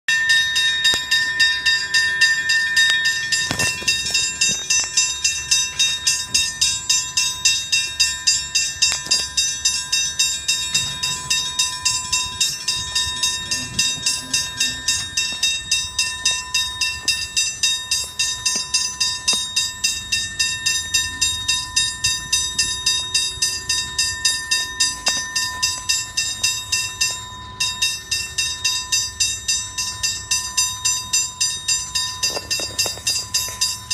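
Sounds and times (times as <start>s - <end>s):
electric train rumbling: 0.1s - 33.9s
level crossing bell ringing: 0.1s - 33.9s.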